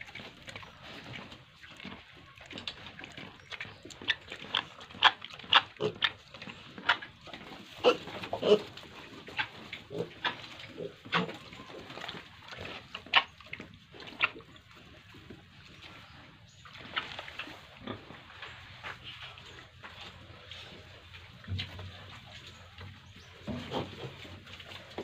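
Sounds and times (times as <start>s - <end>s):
pigs grunting and squealing: 4.0s - 14.5s.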